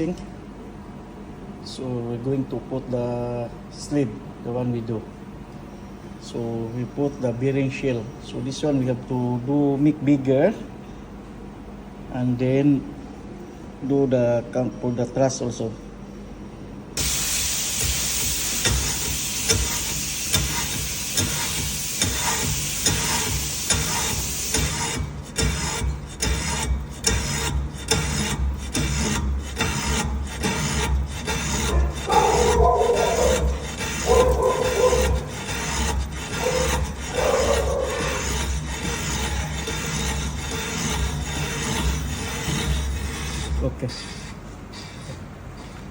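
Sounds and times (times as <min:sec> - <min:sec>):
metal-cutting scrape: 0:17.0 - 0:44.4
low motor hum: 0:25.1 - 0:43.6.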